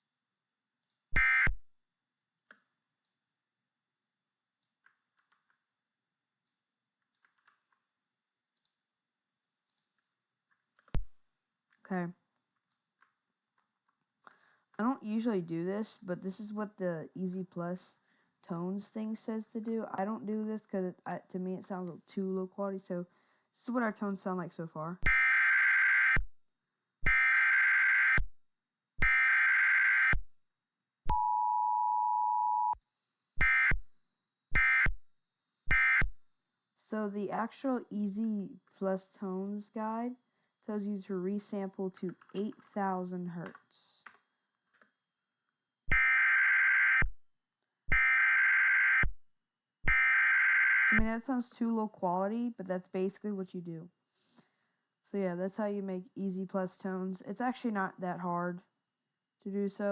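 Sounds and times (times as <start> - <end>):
data burst screech: 34.6 - 34.9.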